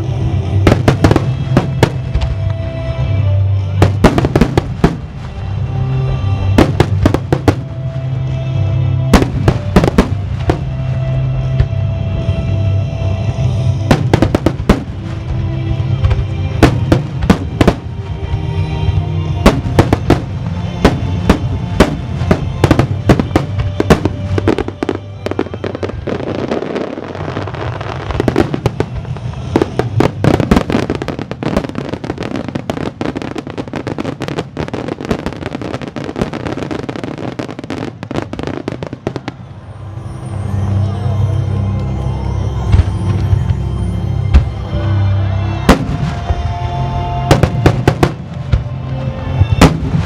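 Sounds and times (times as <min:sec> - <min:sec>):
fireworks bangs and crackles: 0:00.0 - 0:12.6, 0:13.4 - 0:39.9, 0:42.6 - 0:43.6, 0:45.6 - 0:50.0
music from loudspeakers: 0:37.7 - 0:50.0.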